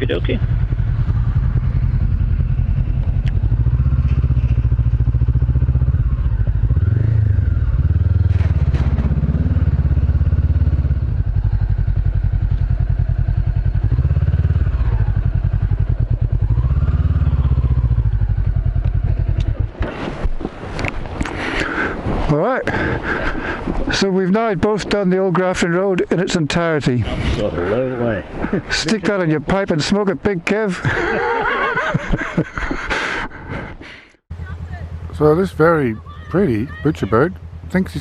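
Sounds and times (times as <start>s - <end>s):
motorcycle engine running: 0.0s - 19.8s, 34.3s - 38.0s.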